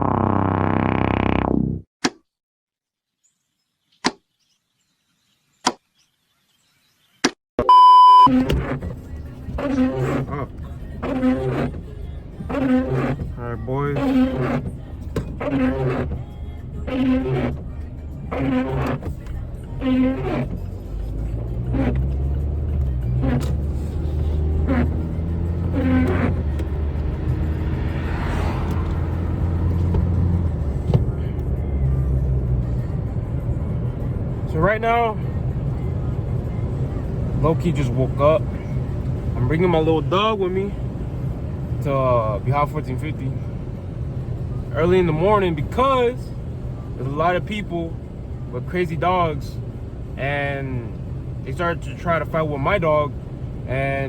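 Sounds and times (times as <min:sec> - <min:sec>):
short pitched sound: 0:00.0 - 0:01.8
car rumbling: 0:00.0 - 0:01.9, 0:07.7 - 0:54.0
high electronic beep: 0:07.6 - 0:08.4.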